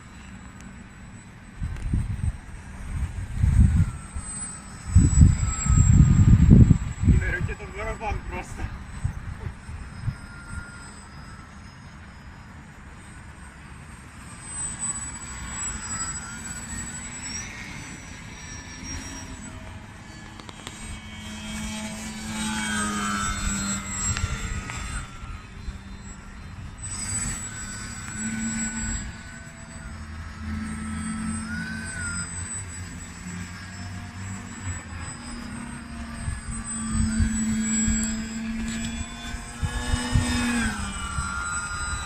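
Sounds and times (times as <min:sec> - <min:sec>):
model plane motor whine: 0:00.0 - 0:42.0
wind rumble on microphone: 0:01.5 - 0:11.6, 0:15.8 - 0:42.0.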